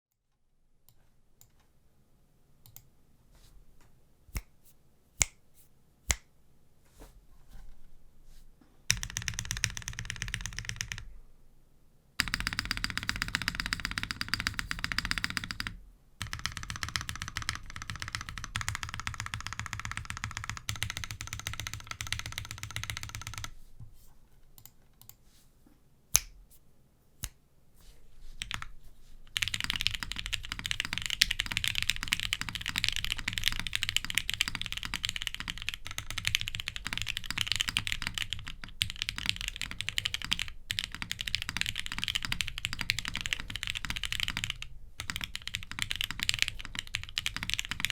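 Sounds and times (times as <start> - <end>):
mechanical keyboard typing: 8.9 - 11.1, 12.2 - 23.5, 28.4 - 28.7, 29.3 - 47.9.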